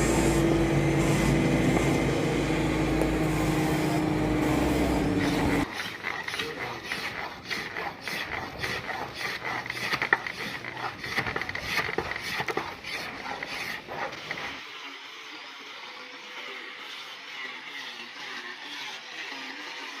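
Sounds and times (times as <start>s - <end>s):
mechanical clicking and scraping: 3.0s - 14.6s.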